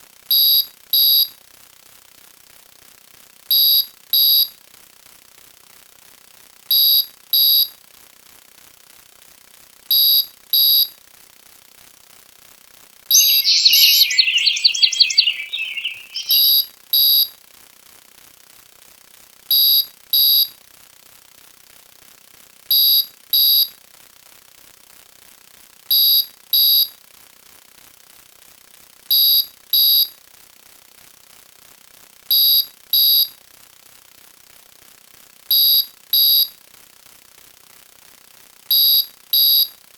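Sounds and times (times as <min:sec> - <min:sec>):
electronic alarm beeping: 0:13.1 - 0:16.6.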